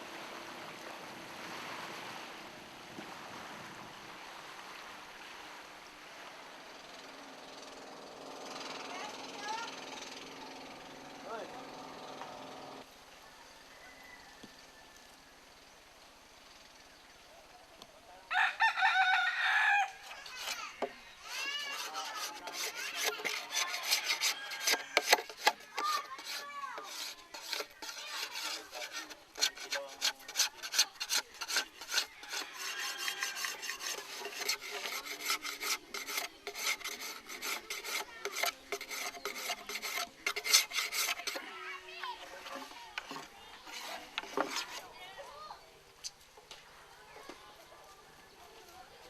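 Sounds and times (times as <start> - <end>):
rooster crowing: 13.2 - 15.0, 18.3 - 20.3, 23.0 - 25.7, 32.2 - 35.4
hand tool rasping on wood: 20.0 - 41.6, 42.2 - 44.8.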